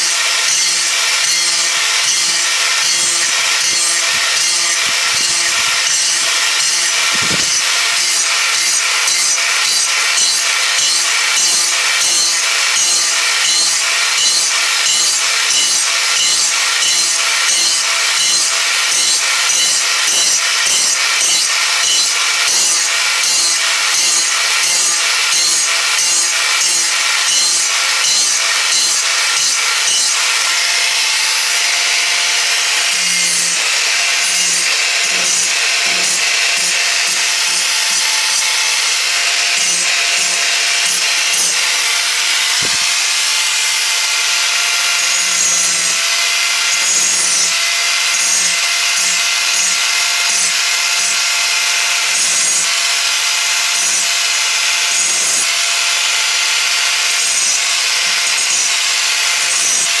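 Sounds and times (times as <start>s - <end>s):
grinder grinding metal: 0.0s - 60.0s
motor whine: 0.3s - 7.8s.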